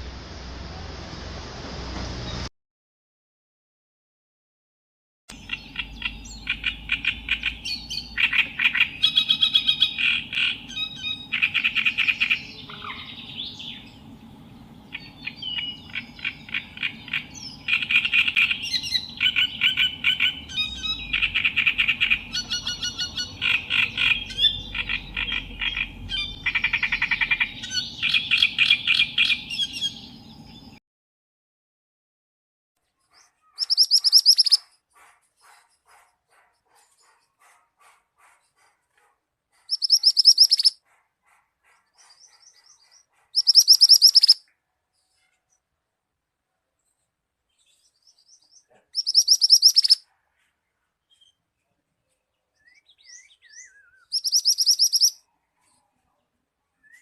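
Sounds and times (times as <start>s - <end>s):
songbird chattering trills: 5.3s - 30.8s, 33.4s - 34.7s, 39.7s - 40.8s, 42.0s - 44.4s, 48.6s - 50.0s, 52.7s - 55.2s.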